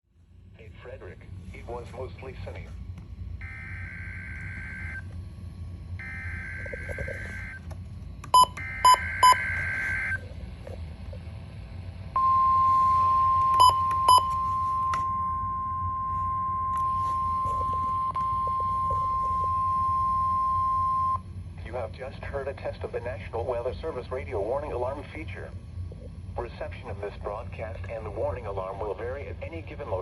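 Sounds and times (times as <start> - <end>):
steady high alarm tone: 3.4 - 5.2, 5.9 - 7.6, 8.3 - 10.3, 12.1 - 21.2
buzzy digital header tones: 6.0 - 7.6.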